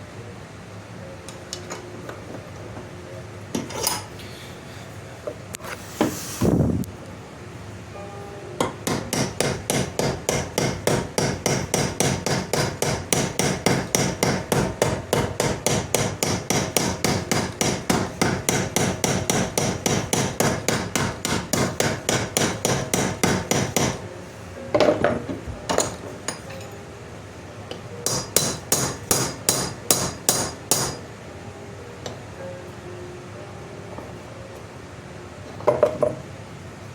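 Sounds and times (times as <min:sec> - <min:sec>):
hammer striking metal pin: 0:08.6 - 0:24.0, 0:28.0 - 0:31.0.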